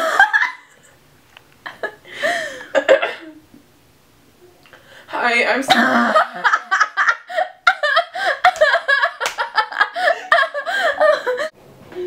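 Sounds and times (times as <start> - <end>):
people giggling: 5.7 - 11.5.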